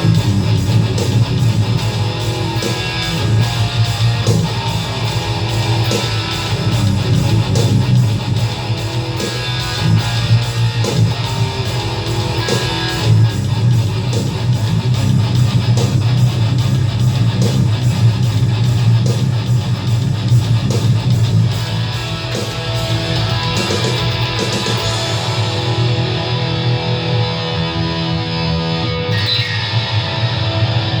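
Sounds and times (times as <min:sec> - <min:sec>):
drum machine metal beat: 0:00.0 - 0:27.0
distorted electric guitar riff: 0:00.0 - 0:31.0.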